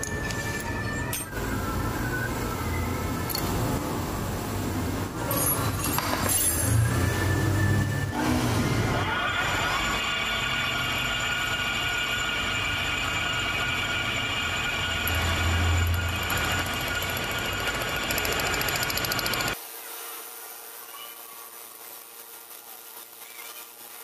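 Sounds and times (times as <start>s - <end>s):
high ringing tones: 0.0s - 3.7s.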